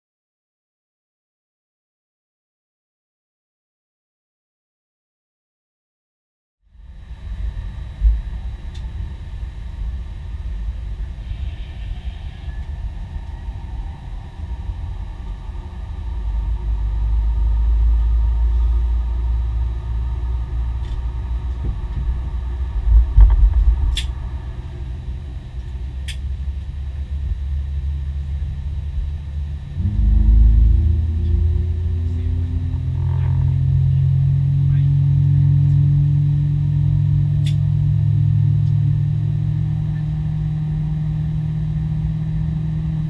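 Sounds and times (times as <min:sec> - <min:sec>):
aircraft cockpit low rumble: 0:06.7 - 0:43.0
heavy bump: 0:20.8 - 0:25.7.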